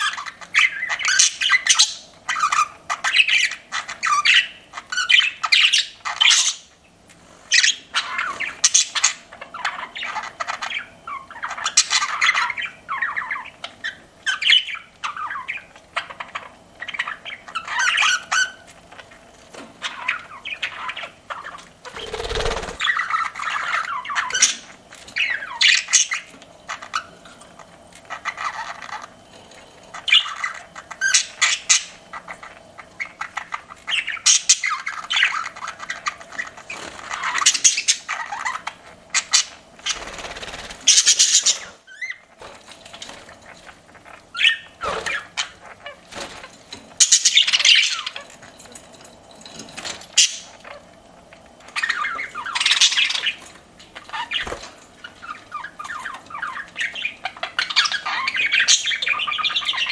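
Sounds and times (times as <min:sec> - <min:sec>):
budgerigars chirping and chattering: 0:00.0 - 0:59.9.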